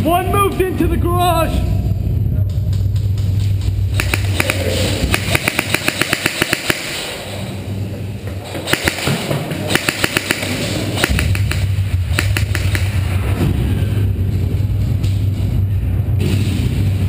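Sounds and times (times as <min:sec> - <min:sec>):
steady low hum: 0:00.0 - 0:17.0
airsoft guns firing bursts: 0:03.9 - 0:07.2, 0:08.6 - 0:13.0.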